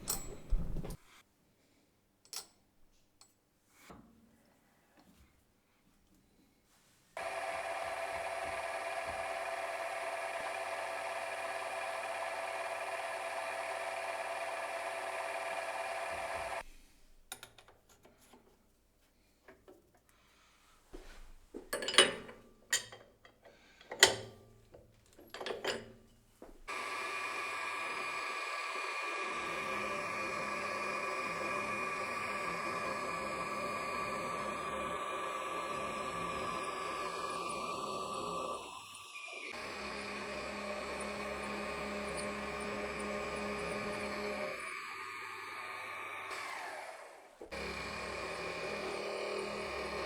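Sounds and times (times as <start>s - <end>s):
lathe milling head whine: 7.2s - 16.6s, 26.7s - 50.0s.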